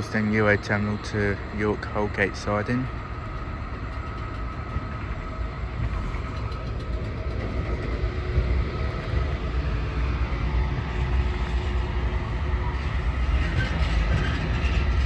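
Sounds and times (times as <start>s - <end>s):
diesel locomotive engine rumble: 0.0s - 15.0s.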